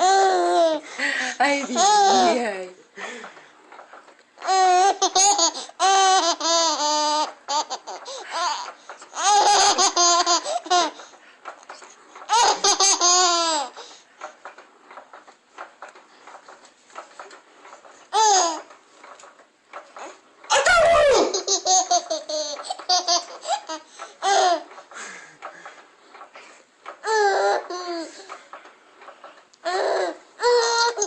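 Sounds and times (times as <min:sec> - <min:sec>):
baby laughing: 0:01.7 - 0:02.4, 0:04.4 - 0:11.0, 0:12.3 - 0:13.8, 0:18.1 - 0:18.7, 0:20.5 - 0:24.7, 0:29.7 - 0:31.0.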